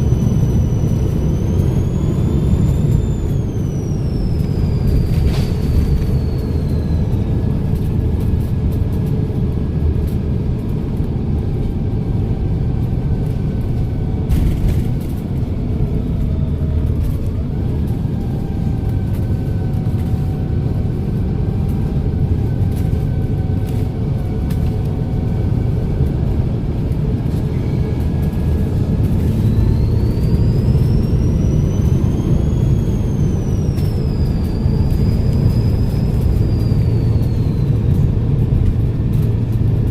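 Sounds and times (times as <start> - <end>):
high turbo whistle: 0.0 - 7.9, 27.4 - 38.4
bus diesel engine rumbling: 0.0 - 39.9.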